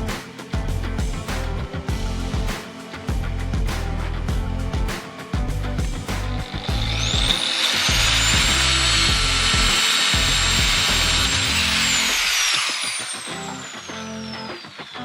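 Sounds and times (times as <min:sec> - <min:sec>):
background music: 0:00.0 - 0:15.0
power tool motor whining: 0:06.1 - 0:15.0.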